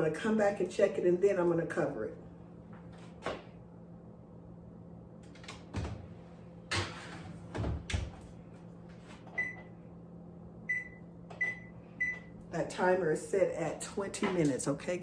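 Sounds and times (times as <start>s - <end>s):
oven rack and door clattering: 6.7s - 8.2s.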